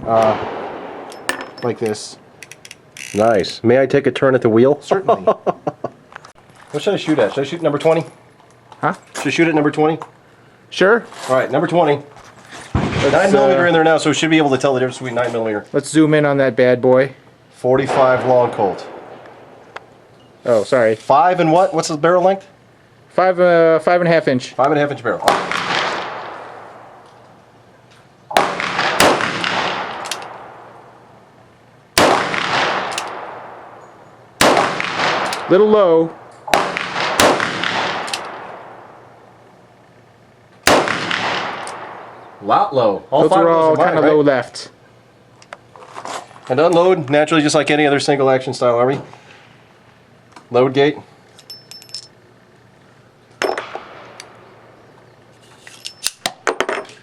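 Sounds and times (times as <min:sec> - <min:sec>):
revolver gunshots with echo: 0:00.0 - 0:01.8, 0:12.8 - 0:13.7, 0:17.8 - 0:19.6, 0:25.2 - 0:27.0, 0:28.3 - 0:31.0, 0:32.0 - 0:39.3, 0:40.6 - 0:42.6, 0:53.4 - 0:54.8
revolver metallic clicks: 0:01.0 - 0:03.2, 0:29.9 - 0:30.6, 0:32.8 - 0:33.3, 0:37.6 - 0:38.6, 0:41.1 - 0:42.2
brass cases clinking: 0:01.1 - 0:03.2, 0:51.3 - 0:52.2, 0:55.5 - 0:57.0.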